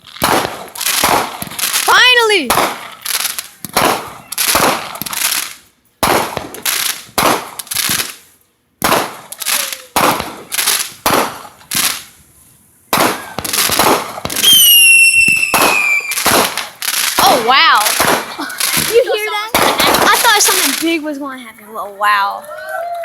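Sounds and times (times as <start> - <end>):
fireworks bangs: 0.0 - 21.4
firework whistle sliding down: 14.4 - 16.2.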